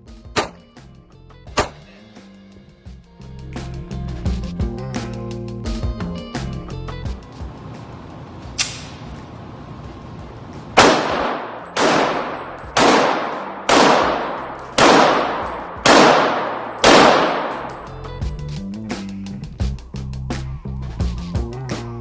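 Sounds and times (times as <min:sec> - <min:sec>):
gunshots echoing: 0:10.8 - 0:17.9.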